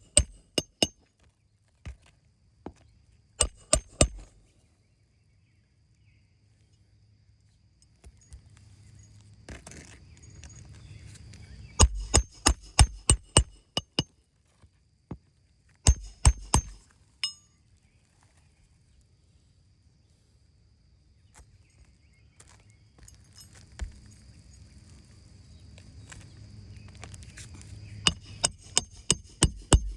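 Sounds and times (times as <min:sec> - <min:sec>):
hammer striking: 0:00.0 - 0:01.0, 0:03.4 - 0:04.3, 0:11.8 - 0:14.0, 0:15.9 - 0:17.4, 0:28.1 - 0:29.9
short metallic ring: 0:15.9 - 0:17.6.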